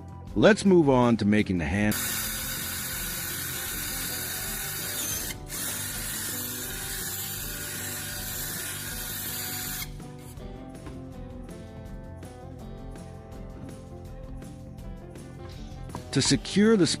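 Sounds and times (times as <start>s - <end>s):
background music: 0.0s - 17.0s
power drill running: 1.9s - 10.0s.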